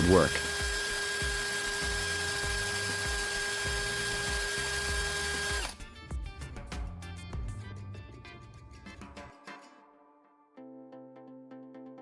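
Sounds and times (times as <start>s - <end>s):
electric drill whining: 0.0s - 6.0s
background music with steady beat: 0.0s - 9.7s.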